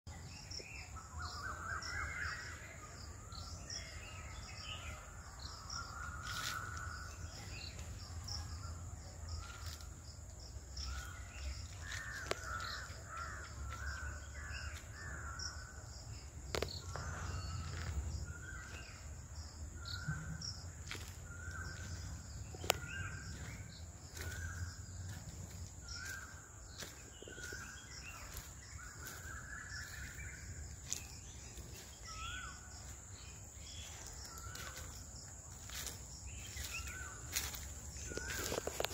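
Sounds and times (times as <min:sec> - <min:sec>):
crows cawing: 0:11.8 - 0:15.8.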